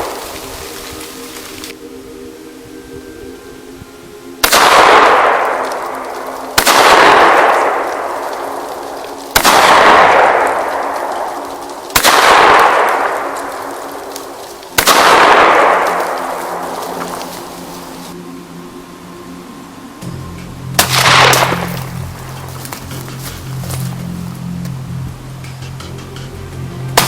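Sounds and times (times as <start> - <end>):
shotgun shots with echo: 6.6 - 8.6, 9.4 - 11.4, 12.0 - 13.8, 14.8 - 16.6.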